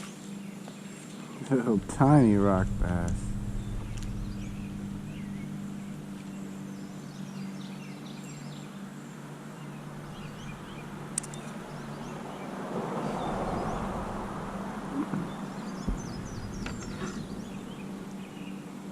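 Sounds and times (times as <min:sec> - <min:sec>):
songbirds chirping: 0:00.0 - 0:18.9
steady low hum: 0:01.5 - 0:07.8, 0:09.6 - 0:18.9
rush of noise: 0:01.7 - 0:06.7, 0:09.9 - 0:18.7
sharp click: 0:11.2 - 0:11.5.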